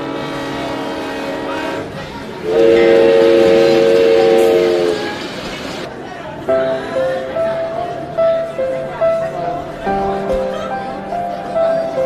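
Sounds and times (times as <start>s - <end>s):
chord of held horn-like tones: 0.0s - 5.3s.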